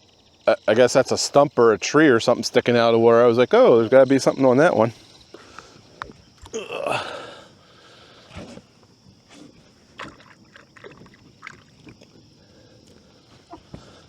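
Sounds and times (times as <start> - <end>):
faint wind: 0.0 - 14.0
water: 9.9 - 12.8.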